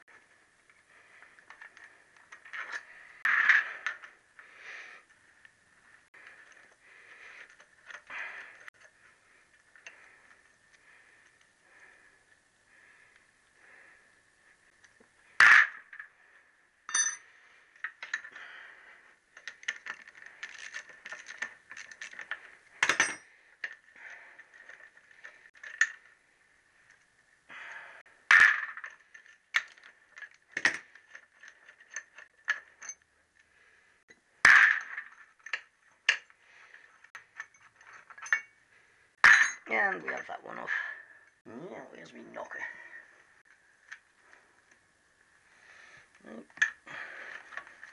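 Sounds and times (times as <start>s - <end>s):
metal tools clinking on casing: 16.9s - 18.3s, 19.4s - 23.8s, 37.1s - 38.6s.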